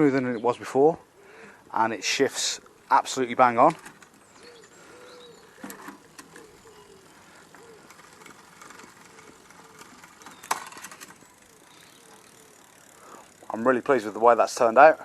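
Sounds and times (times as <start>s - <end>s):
bicycle drivetrain clicking: 3.0s - 15.0s.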